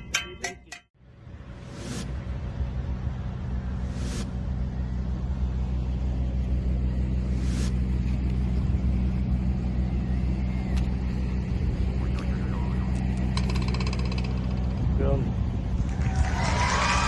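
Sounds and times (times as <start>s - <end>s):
engine droning hum: 0.0s - 17.0s
brief swish: 3.9s - 4.4s, 7.4s - 7.8s.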